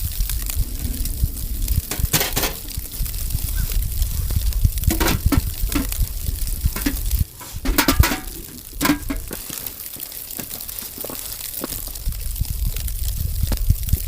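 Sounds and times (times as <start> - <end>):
low rumble: 0.0 - 9.4, 11.8 - 14.0
utensil scraping in a pan: 0.4 - 11.1.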